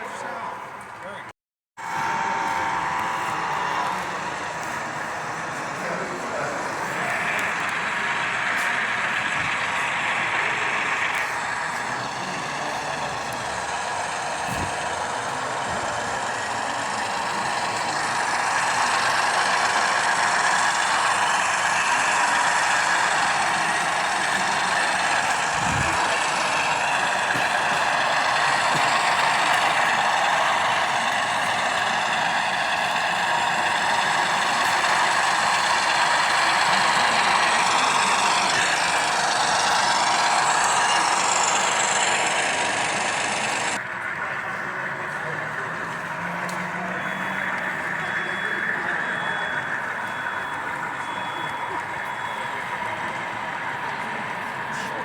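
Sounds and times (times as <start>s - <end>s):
model train motors whirring: 1.8s - 55.0s
wheels clicking over track: 2.0s - 55.0s.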